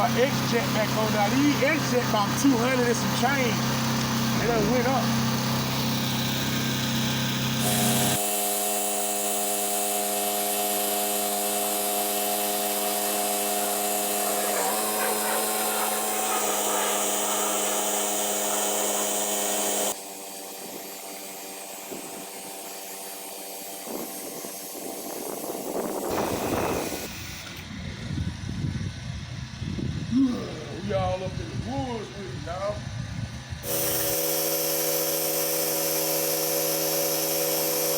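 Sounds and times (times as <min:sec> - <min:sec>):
pressure washer motor: 0:00.0 - 0:27.7, 0:33.6 - 0:37.9
water spraying hiss: 0:11.8 - 0:20.0, 0:33.7 - 0:37.9.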